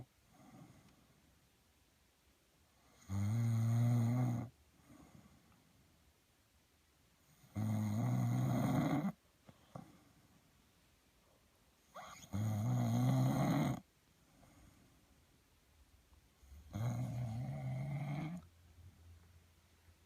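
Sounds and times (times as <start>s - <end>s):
man snoring: 3.0s - 4.5s, 7.5s - 9.2s, 12.0s - 13.8s, 16.7s - 18.4s.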